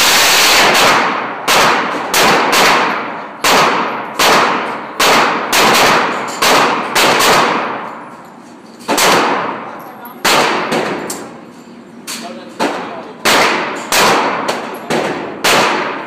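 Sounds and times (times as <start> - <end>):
handgun shots echoing: 0.6 - 8.0, 8.9 - 9.6, 12.6 - 16.0.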